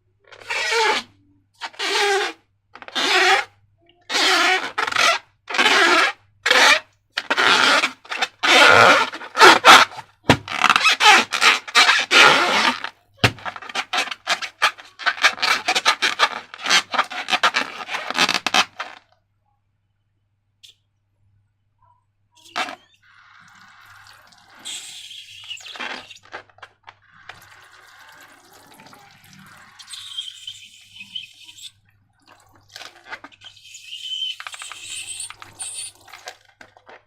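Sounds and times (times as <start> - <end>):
rubbing and scraping strokes: 22.4 - 37.0.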